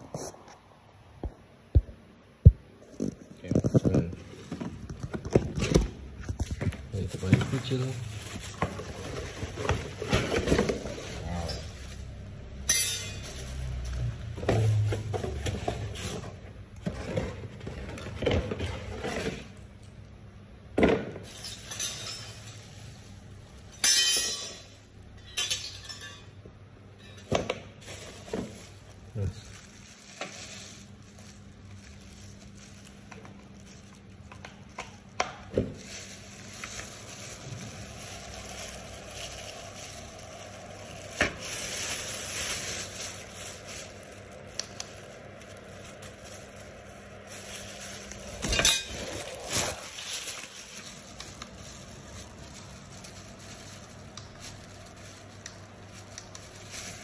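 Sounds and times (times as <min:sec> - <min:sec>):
packaging rustling: 0:02.8 - 0:12.6, 0:13.2 - 0:19.6, 0:27.8 - 0:57.0.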